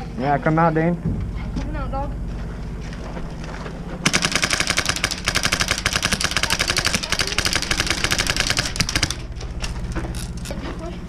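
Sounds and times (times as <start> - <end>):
airsoft rifle rattling fire: 4.0 - 10.4.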